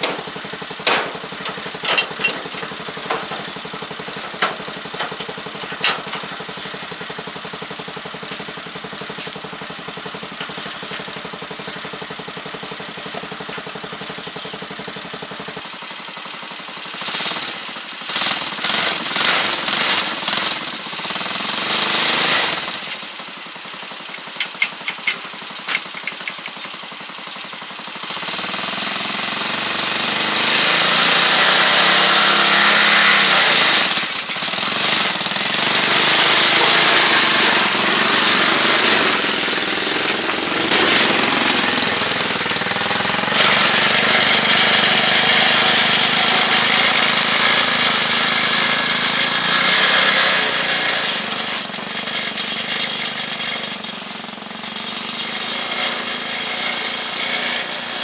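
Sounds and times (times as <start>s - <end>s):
tricycle engine revving: 0.0s - 58.0s
sharp clicks: 24.1s - 26.8s.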